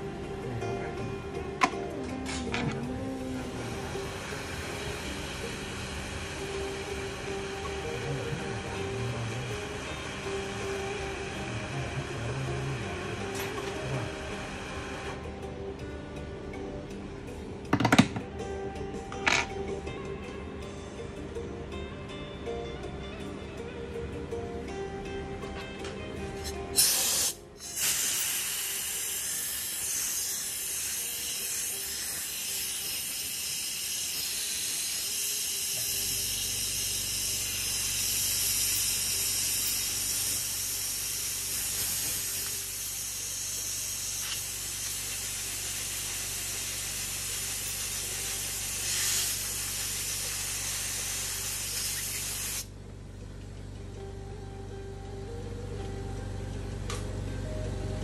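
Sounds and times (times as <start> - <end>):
air jet hissing: 3.2 - 15.2, 26.8 - 52.7
low steady hum: 52.7 - 58.0.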